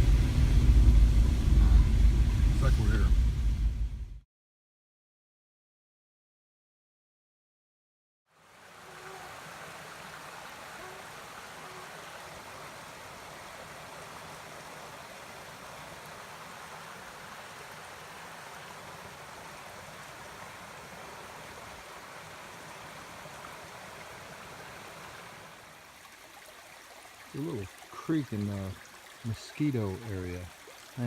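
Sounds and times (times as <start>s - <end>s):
creek flowing: 8.3s - 31.0s.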